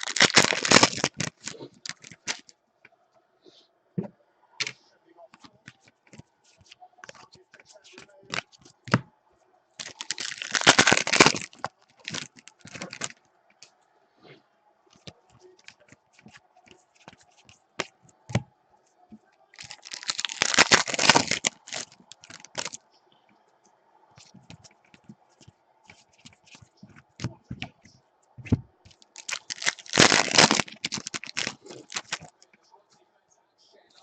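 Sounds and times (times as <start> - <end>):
foil packs ripping: 0.0 - 2.4, 9.8 - 13.1, 19.6 - 22.8, 29.1 - 32.3
cards being handled: 0.0 - 2.5, 4.6 - 9.1, 9.8 - 13.7, 14.9 - 18.5, 19.6 - 22.8, 24.2 - 32.5.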